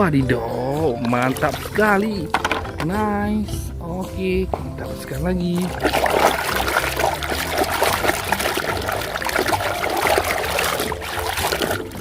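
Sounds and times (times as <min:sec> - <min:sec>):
water running and splashing: 0:00.9 - 0:02.4, 0:05.4 - 0:12.0.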